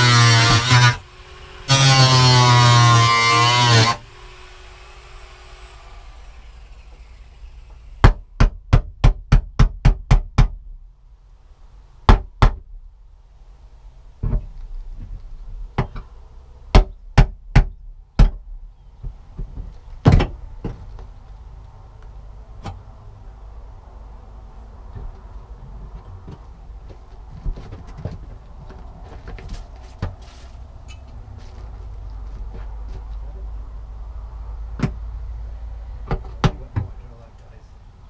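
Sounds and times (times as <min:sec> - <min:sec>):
sharp knocks: 0:08.0 - 0:10.6, 0:12.1 - 0:12.7, 0:16.7 - 0:18.4.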